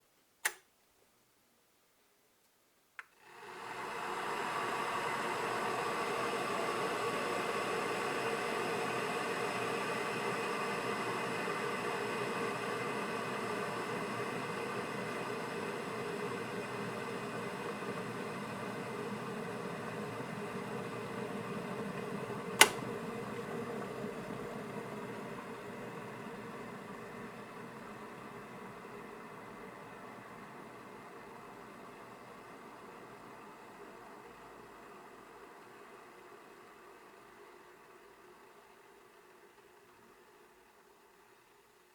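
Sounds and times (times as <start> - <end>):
kettle switch click: 0.4 - 0.6, 22.6 - 22.9
kettle boiling hiss: 3.2 - 41.9.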